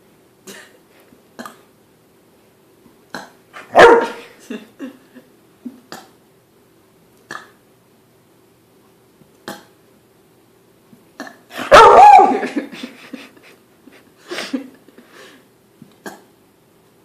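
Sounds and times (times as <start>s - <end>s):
loud human burp: 3.1s - 3.4s
short dog barks: 3.6s - 4.2s.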